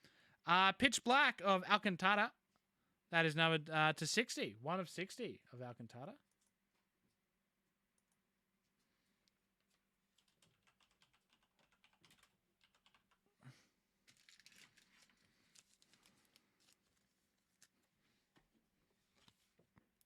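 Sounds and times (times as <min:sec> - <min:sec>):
trading cards and packaging rustling: 0:14.0 - 0:18.0.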